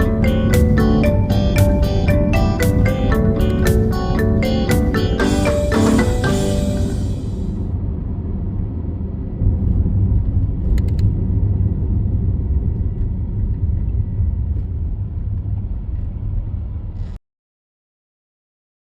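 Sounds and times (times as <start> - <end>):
car road and engine rumble: 6.5 - 17.2.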